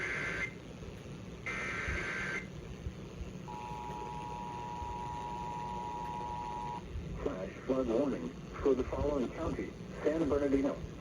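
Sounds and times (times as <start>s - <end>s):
two-tone attention signal: 3.5s - 6.8s.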